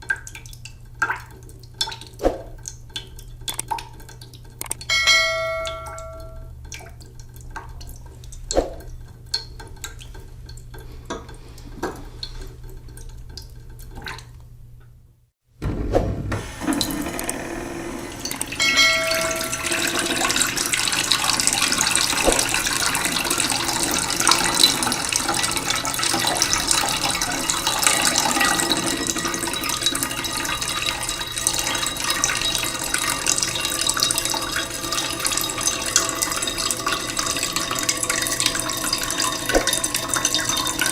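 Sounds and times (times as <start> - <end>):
scattered clicks: 3.4 - 5.0
short ringing tone: 4.9 - 6.5, 18.6 - 20.3
low hum: 15.6 - 25.1.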